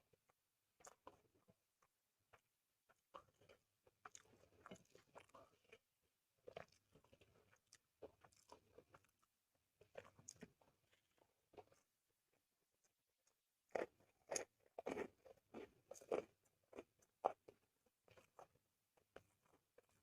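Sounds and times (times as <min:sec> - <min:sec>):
person chewing: 0:00.8 - 0:01.2, 0:01.8 - 0:05.8, 0:13.7 - 0:18.5.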